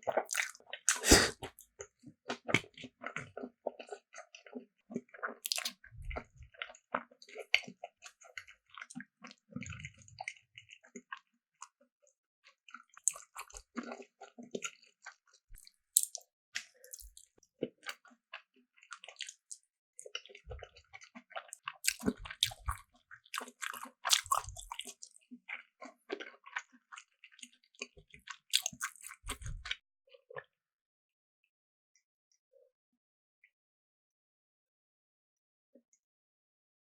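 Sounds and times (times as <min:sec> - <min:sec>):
wet chewing and squishing: 0:00.1 - 0:01.6, 0:02.3 - 0:11.2, 0:12.7 - 0:30.5
mouth clicks: 0:00.9 - 0:01.5.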